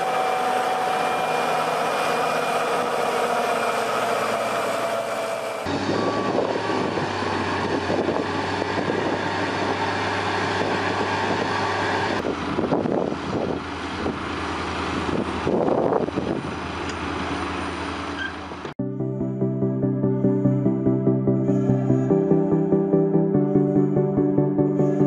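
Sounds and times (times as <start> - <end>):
heavy vehicle engine droning: 0.0 - 25.0.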